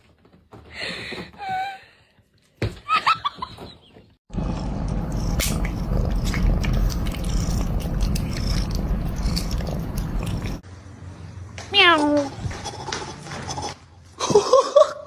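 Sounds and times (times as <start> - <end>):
cat purring: 5.1 - 10.6.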